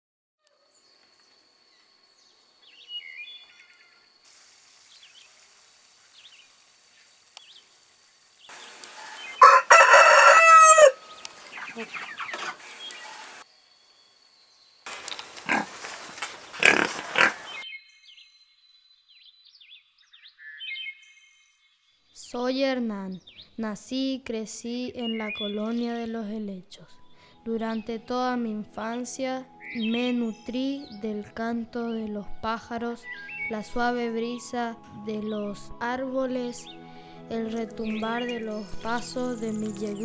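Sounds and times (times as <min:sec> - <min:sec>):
small birds chirping: 0:00.5 - 0:09.6, 0:11.0 - 0:26.1, 0:28.8 - 0:31.3, 0:37.8 - 0:40.0
high insect trill: 0:00.5 - 0:11.7, 0:12.5 - 0:17.6, 0:37.8 - 0:40.0
rooster crowing: 0:09.0 - 0:11.3.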